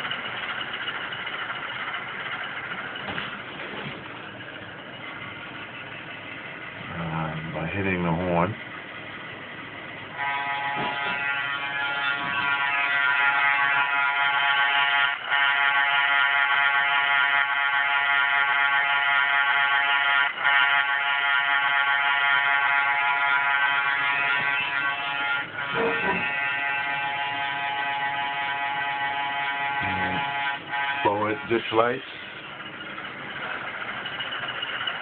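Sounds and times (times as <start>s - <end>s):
locomotive horn through small speaker: 10.2s - 32.0s.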